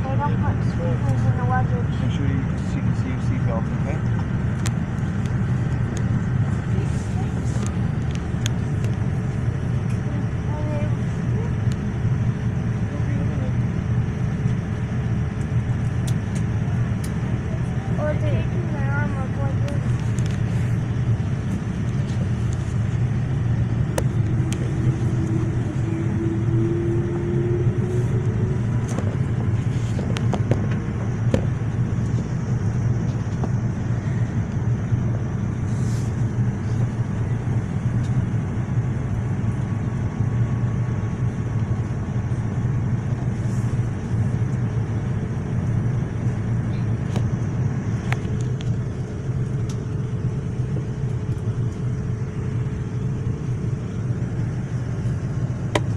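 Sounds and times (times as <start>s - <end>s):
airliner cabin engine rumble: 0.0s - 55.9s
faint rising tone: 24.2s - 28.8s.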